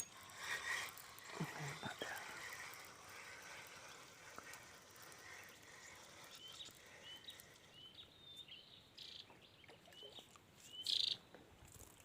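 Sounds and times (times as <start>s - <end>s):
faint outdoor ambience: 0.0s - 12.0s
bird chirping: 5.0s - 11.4s.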